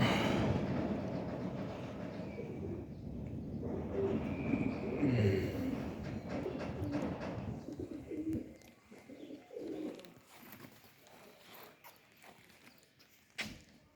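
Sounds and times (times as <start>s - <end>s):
pigeons cooing: 2.3s - 10.1s.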